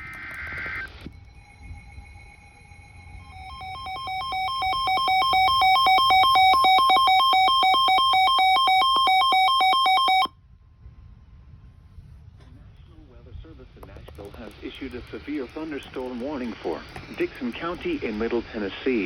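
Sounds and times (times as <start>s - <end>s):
weather radio alarm alternating tones: 2.3s - 10.3s.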